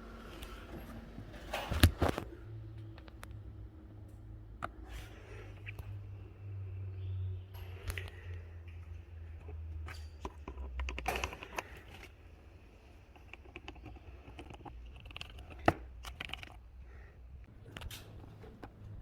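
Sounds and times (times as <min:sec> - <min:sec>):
low steady hum: 0:00.0 - 0:19.0
clicks crinkling and scraping: 0:01.3 - 0:03.4, 0:07.7 - 0:19.0.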